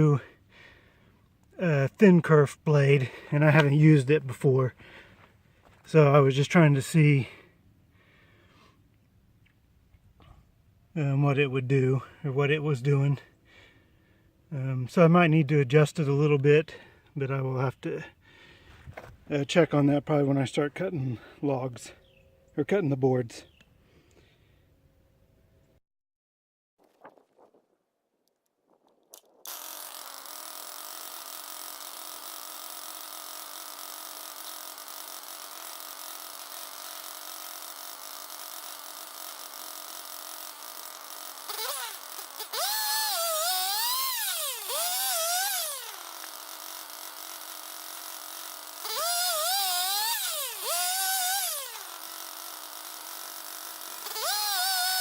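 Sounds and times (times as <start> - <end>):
circular saw blade whining: 29.4 - 55.0
saw blade cutting log: 29.5 - 55.0.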